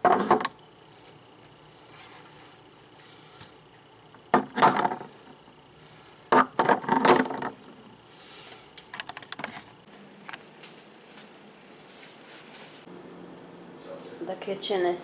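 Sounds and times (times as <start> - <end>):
objects rattling and clinking: 6.3 - 7.8.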